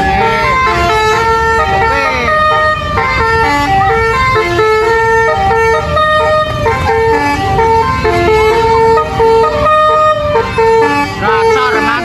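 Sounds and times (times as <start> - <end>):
engine and traffic rumble: 0.0 - 12.0
multi-note bus air horn tune: 0.0 - 12.0.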